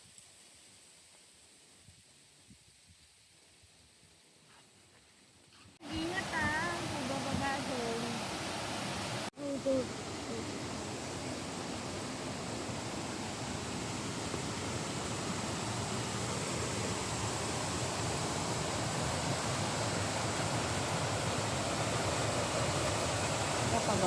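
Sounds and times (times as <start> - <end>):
rushing water: 5.8 - 24.0.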